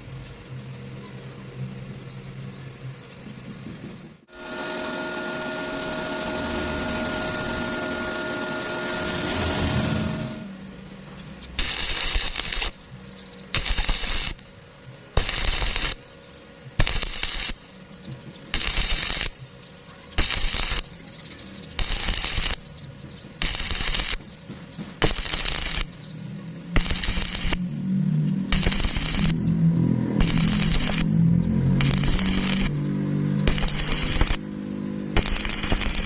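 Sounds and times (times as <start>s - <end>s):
low steady hum: 0.0s - 36.0s
crackling welding arc: 11.5s - 36.0s.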